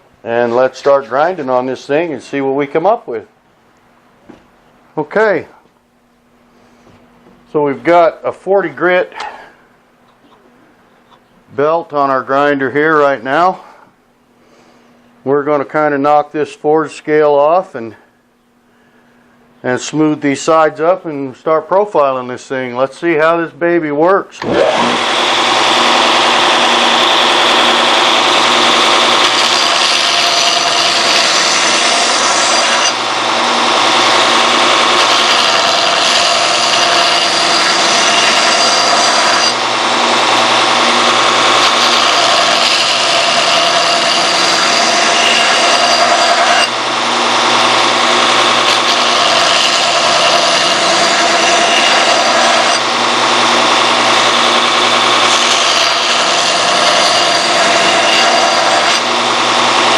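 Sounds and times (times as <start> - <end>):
belt grinder grinding steel: 24.4 - 59.9.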